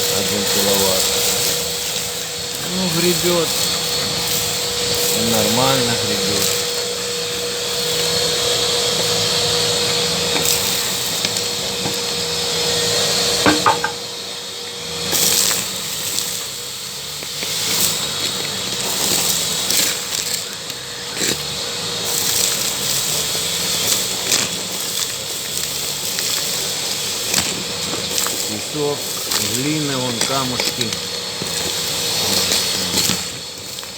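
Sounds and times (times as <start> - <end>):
pebbles rattling up hose: 0.0 - 33.9
vacuum cleaner running: 0.0 - 33.9.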